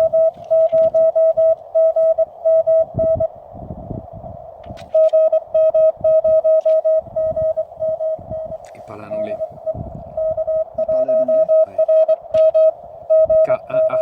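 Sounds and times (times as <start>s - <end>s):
morse code tone: 0.0s - 3.3s, 5.0s - 14.0s.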